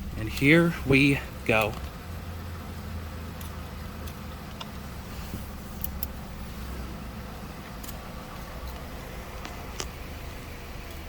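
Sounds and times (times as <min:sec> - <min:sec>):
muffled blower rumble: 0:00.0 - 0:11.0.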